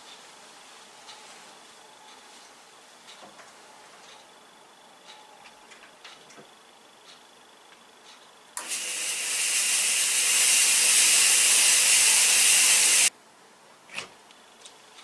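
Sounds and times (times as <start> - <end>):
fog machine hissing: 8.6 - 13.1.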